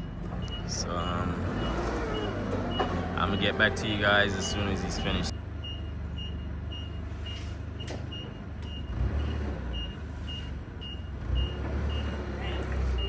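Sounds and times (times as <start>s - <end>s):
backup alarm beeping: 0.0s - 7.5s
low engine rumble: 0.0s - 13.0s.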